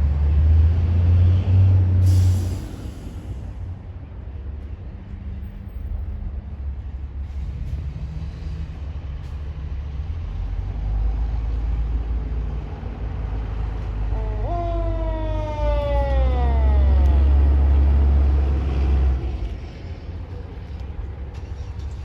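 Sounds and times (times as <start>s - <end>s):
fire truck engine rumbling: 0.0s - 22.0s
siren wail: 14.1s - 18.8s.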